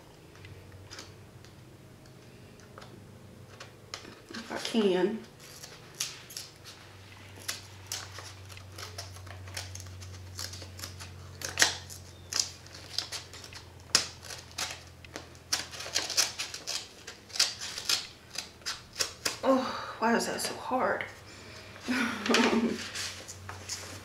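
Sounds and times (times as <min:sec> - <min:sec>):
paper envelope crinkling and tearing: 0:03.5 - 0:19.5.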